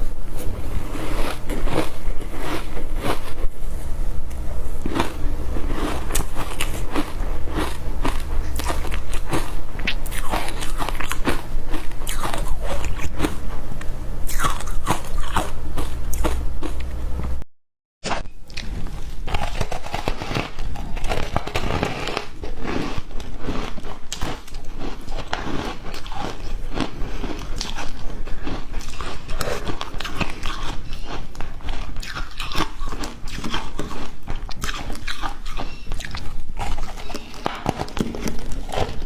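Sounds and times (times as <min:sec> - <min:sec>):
ice being chewed: 0:04.8 - 0:13.4, 0:18.5 - 0:39.0.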